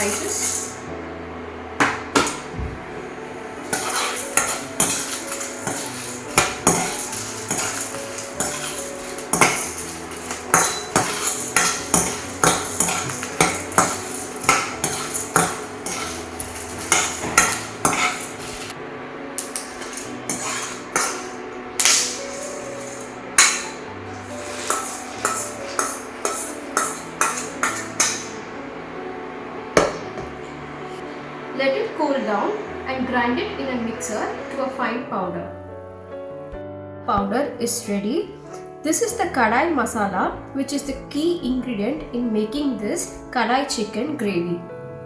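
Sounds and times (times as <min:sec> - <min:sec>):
spatula clinking and scraping pan: 0:00.0 - 0:00.9, 0:03.4 - 0:18.8, 0:19.4 - 0:29.0, 0:29.7 - 0:30.6.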